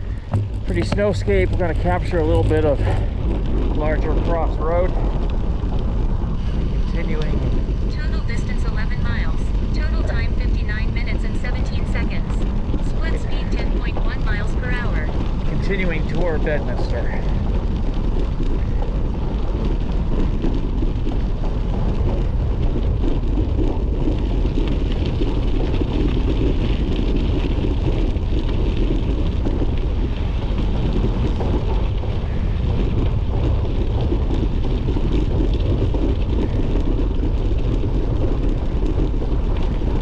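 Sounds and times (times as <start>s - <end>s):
bike tyres rolling on gravel: 0.0s - 40.0s
wind on microphone: 0.0s - 40.0s.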